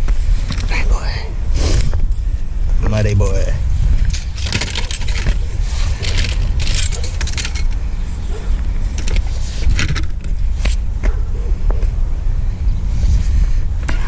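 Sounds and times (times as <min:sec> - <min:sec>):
moving vehicle rumble: 0:00.0 - 0:14.0
metallic jingling and clinking: 0:04.1 - 0:09.9.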